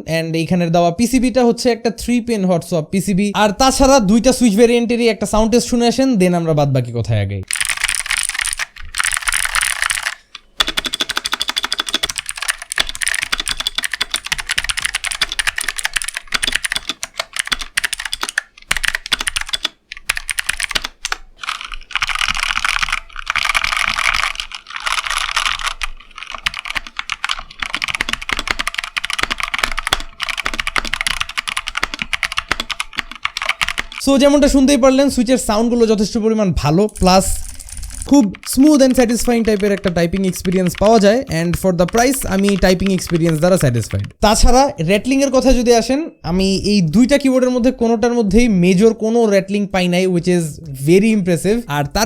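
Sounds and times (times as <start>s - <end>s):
fast typing on mechanical keyboard: 7.5s - 34.0s, 37.0s - 44.2s.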